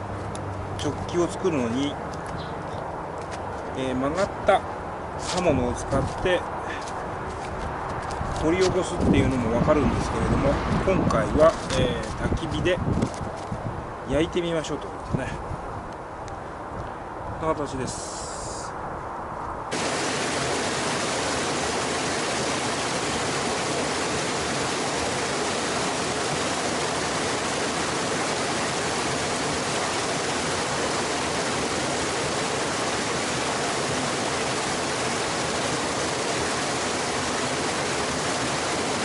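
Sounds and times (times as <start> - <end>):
steady rushing noise: 17.7 - 39.0.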